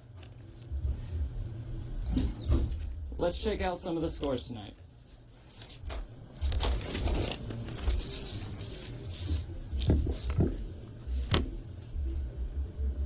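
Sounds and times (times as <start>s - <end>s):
low hum: 0.0s - 13.0s
rustling and handling noises: 4.0s - 12.4s.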